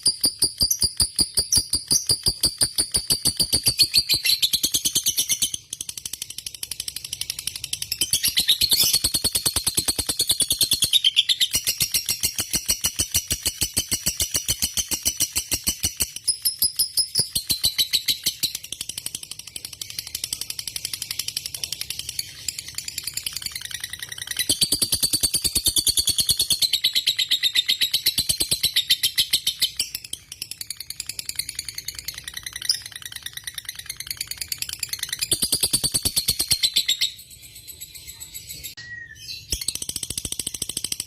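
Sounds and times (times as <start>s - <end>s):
lovebird chattering trill: 0.0s - 5.7s.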